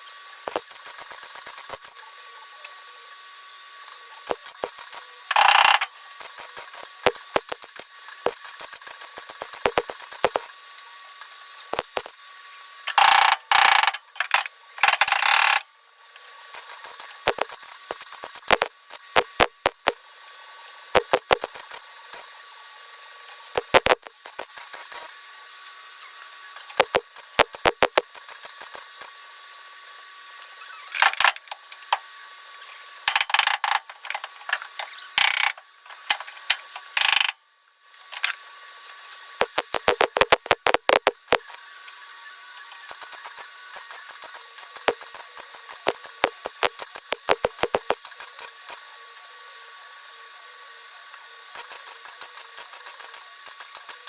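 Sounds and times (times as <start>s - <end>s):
welder crackling hiss: 0.0s - 2.0s, 4.1s - 10.6s, 16.5s - 20.0s, 20.7s - 22.4s, 23.2s - 25.2s, 39.1s - 41.6s, 42.6s - 48.9s, 51.1s - 54.0s
sharp clicks: 17.3s - 20.0s, 21.0s - 21.7s, 23.6s - 24.5s, 26.8s - 28.8s, 39.4s - 41.6s, 42.9s - 48.0s.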